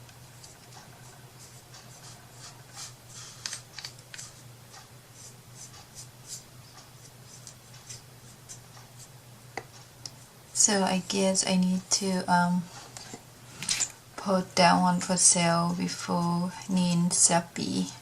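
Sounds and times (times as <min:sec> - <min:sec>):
scratching and rustling strokes: 0:00.0 - 0:10.8
low electrical hum: 0:00.0 - 0:18.0.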